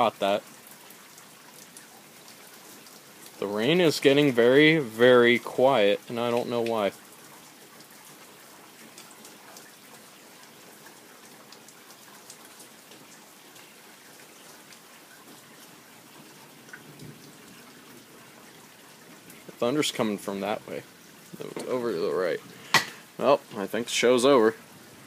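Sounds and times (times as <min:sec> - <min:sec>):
light rain falling: 0:00.0 - 0:25.0
raindrops ticking: 0:00.0 - 0:25.0.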